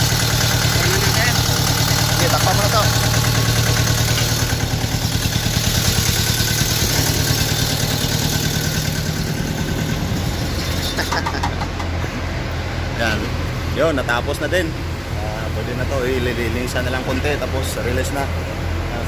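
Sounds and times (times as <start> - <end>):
diesel engine idling: 0.0 - 19.0.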